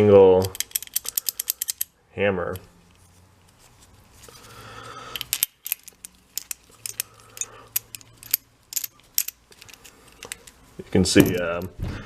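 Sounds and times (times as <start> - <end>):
metal parts scraping: 0.4 - 1.9, 5.1 - 11.7
metallic clicks and clinks: 0.4 - 1.9, 5.1 - 10.6.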